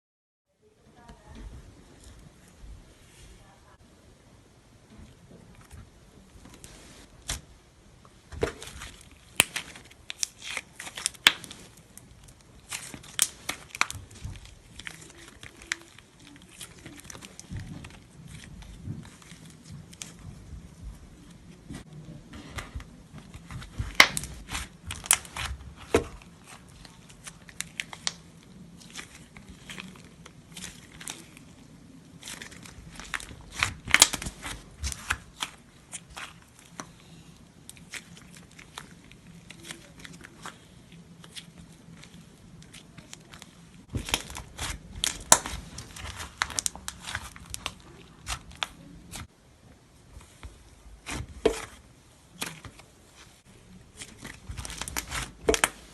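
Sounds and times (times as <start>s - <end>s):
slime squeezed crackling and popping: 8.6s - 20.2s, 23.3s - 36.9s, 37.6s - 49.3s, 54.0s - 55.9s.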